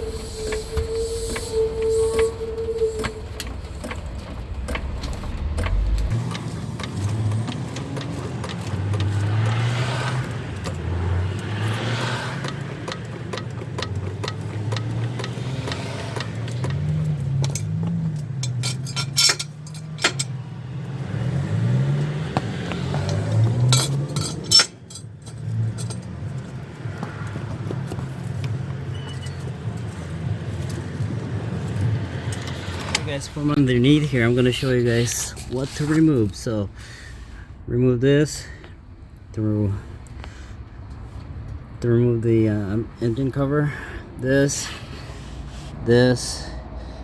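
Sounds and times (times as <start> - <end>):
car engine running: 0.0 - 35.2
sharp metallic clinks: 12.4 - 20.5, 23.0 - 26.5.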